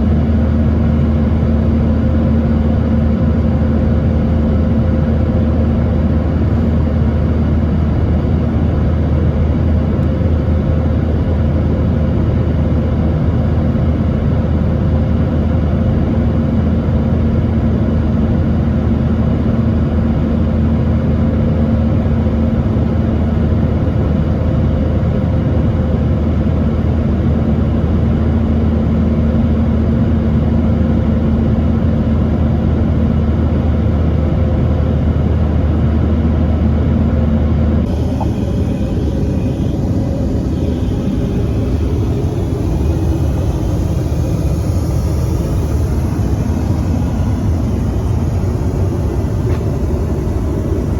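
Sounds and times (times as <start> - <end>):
jet engine drone: 0.0 - 50.9
steady humming tones: 0.0 - 50.9
rushing air: 37.8 - 50.9.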